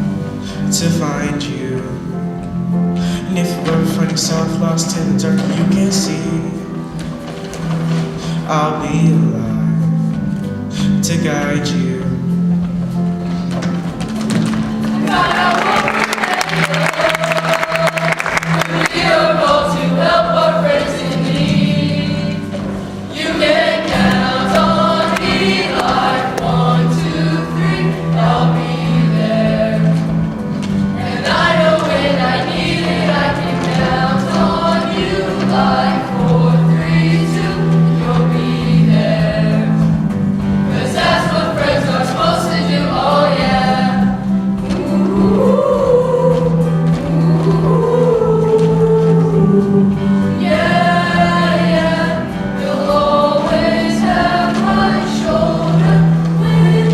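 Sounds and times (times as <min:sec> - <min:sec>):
instrumental accompaniment: 0:00.0 - 0:56.9
choir singing in parts: 0:14.2 - 0:56.9.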